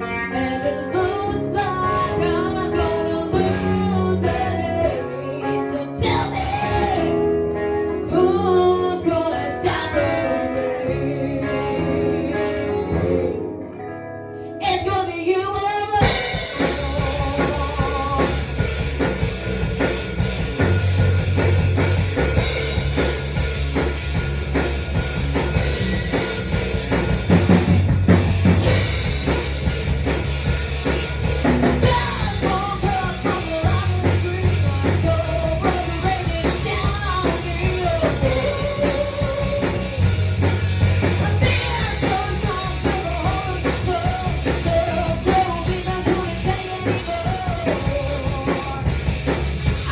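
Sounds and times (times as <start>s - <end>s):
person singing: 0.0s - 13.9s, 14.5s - 18.6s, 31.6s - 40.2s, 41.0s - 49.0s
drum kit steady beat: 16.0s - 49.9s
repeating bass line: 16.0s - 49.9s.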